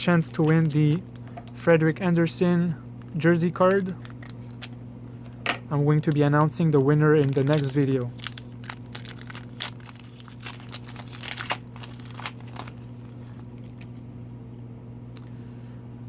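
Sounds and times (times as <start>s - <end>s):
wrapper crinkling and tearing: 0.0s - 1.2s, 3.1s - 4.8s, 5.8s - 14.0s.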